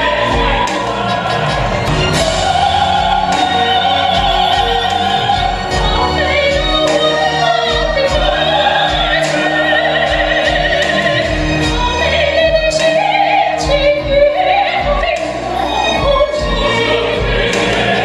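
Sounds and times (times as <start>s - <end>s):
instrumental accompaniment: 0.0s - 18.0s
woman singing with vibrato: 0.0s - 18.0s.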